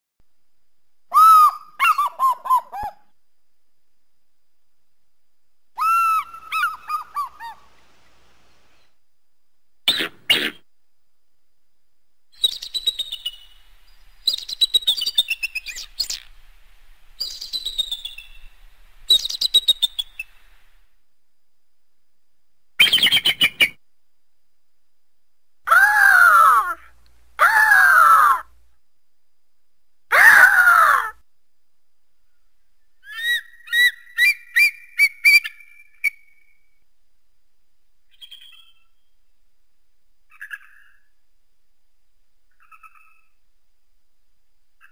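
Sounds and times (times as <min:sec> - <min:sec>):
eagle chirping calls: 0:01.1 - 0:03.0, 0:05.8 - 0:07.8
eagle screaming: 0:01.1 - 0:03.0, 0:05.8 - 0:07.7, 0:25.7 - 0:28.5, 0:30.1 - 0:31.2.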